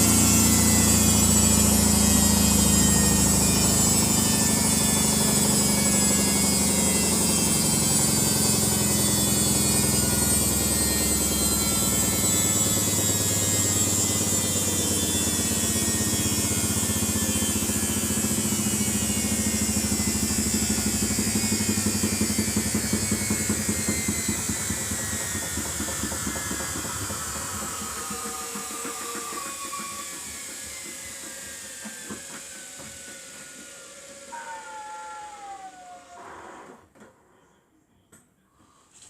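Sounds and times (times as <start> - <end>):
washing machine spin slowing: 0.0 - 36.7.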